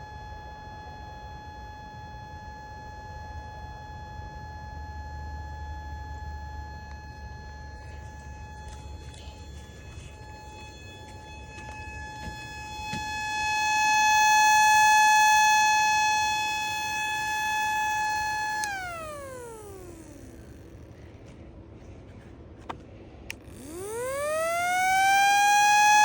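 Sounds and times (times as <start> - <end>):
tornado siren high tone: 4.7 - 20.8, 23.5 - 26.0.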